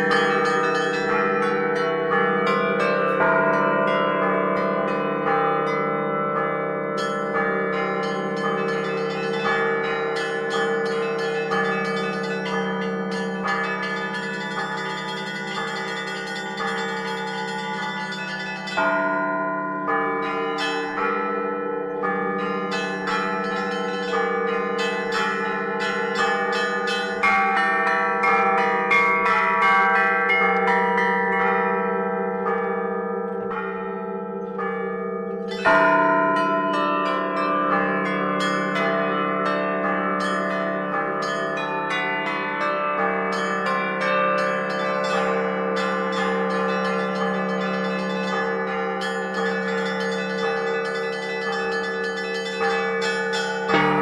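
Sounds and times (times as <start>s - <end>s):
small high bells struck: 0.0s - 4.1s, 7.0s - 19.2s, 44.4s - 54.0s
hum of larger bells: 0.0s - 54.0s.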